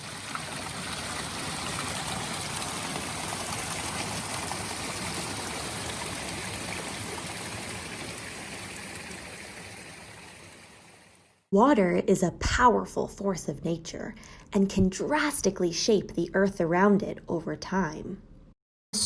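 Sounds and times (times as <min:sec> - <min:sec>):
flowing water rushing: 0:00.0 - 0:11.3.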